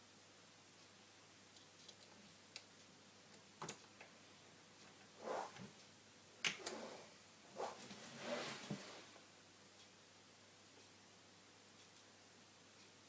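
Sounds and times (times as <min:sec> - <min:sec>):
soft rustle: 0:06.6 - 0:09.3.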